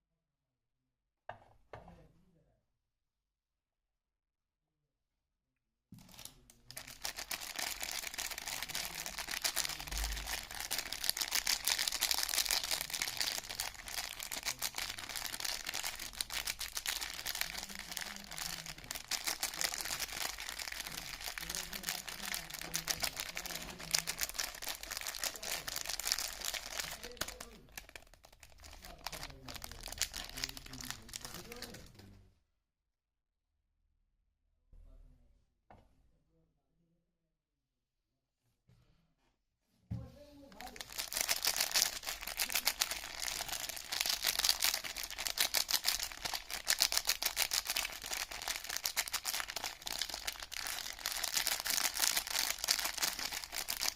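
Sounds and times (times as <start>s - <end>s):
wrapper crinkling and tearing: 6.0s - 32.0s, 40.5s - 53.9s.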